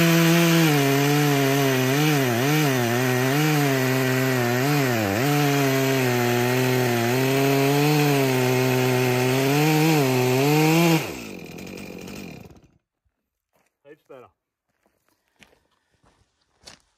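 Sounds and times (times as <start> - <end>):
chainsaw cutting a log: 0.0 - 12.8.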